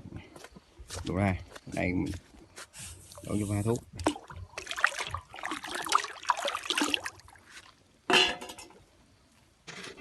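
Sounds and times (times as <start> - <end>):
liquid pouring and sloshing: 3.1 - 7.9.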